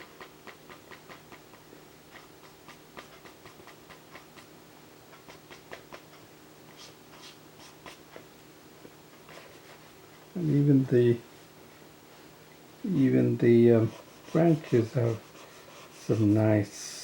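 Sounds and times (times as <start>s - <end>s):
low steady hum: 0.0s - 17.0s
pencil scratching on paper: 6.7s - 8.2s, 13.8s - 16.6s.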